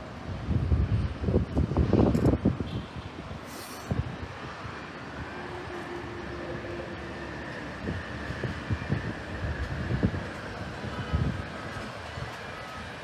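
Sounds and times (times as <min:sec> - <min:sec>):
train rumbling by: 0:03.4 - 0:13.0.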